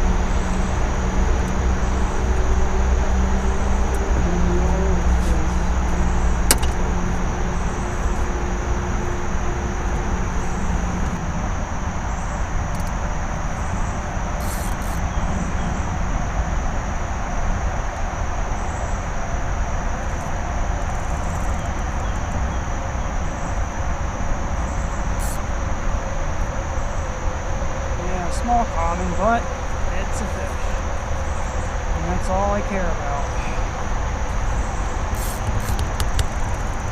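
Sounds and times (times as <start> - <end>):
low rumble: 0.0 - 14.4
low hum: 0.0 - 36.9
night insects droning: 0.0 - 36.9.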